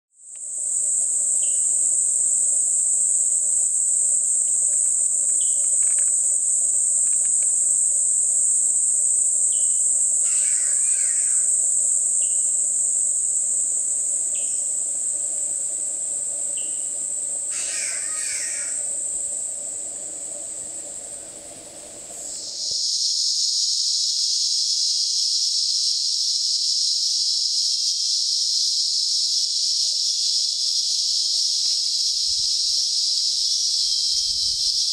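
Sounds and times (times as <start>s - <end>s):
high-pitched insect drone: 0.2s - 21.4s, 22.1s - 34.9s
lower-pitched insect buzz: 0.2s - 34.9s.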